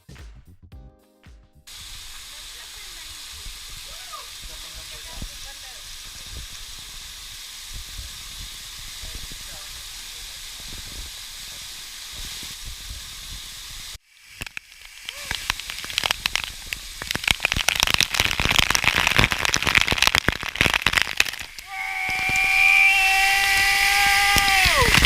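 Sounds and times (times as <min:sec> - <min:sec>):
waterfall rushing: 0:01.7 - 0:14.0, 0:14.8 - 0:25.0
held pitched tone: 0:20.6 - 0:25.0.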